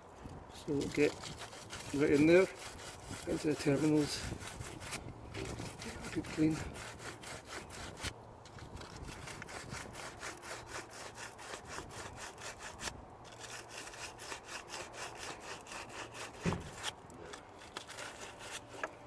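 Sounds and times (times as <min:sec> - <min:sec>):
sandpaper scrubbing metal: 0:00.7 - 0:08.1, 0:08.7 - 0:16.9, 0:17.6 - 0:18.8
knock: 0:16.4 - 0:16.7.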